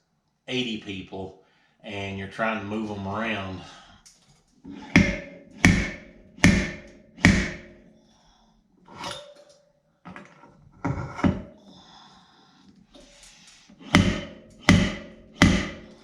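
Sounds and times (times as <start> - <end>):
hammer striking sheet metal: 4.7 - 8.0, 13.8 - 16.0.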